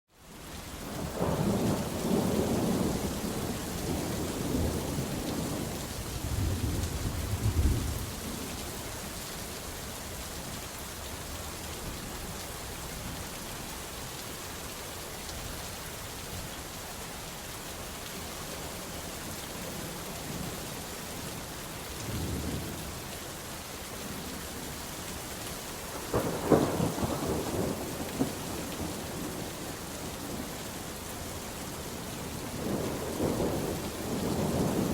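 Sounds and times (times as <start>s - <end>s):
steady rain: 0.1s - 34.9s
rolling thunder: 1.2s - 8.4s, 26.0s - 30.4s, 32.5s - 34.9s.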